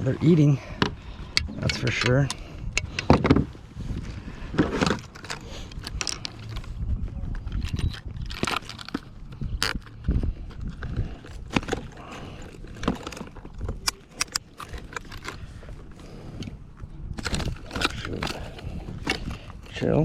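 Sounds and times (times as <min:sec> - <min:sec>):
wind rumble on microphone: 0:00.0 - 0:14.0, 0:14.6 - 0:20.0
fishing gear knocking and clicking: 0:00.8 - 0:03.5, 0:04.9 - 0:15.5, 0:17.2 - 0:19.8.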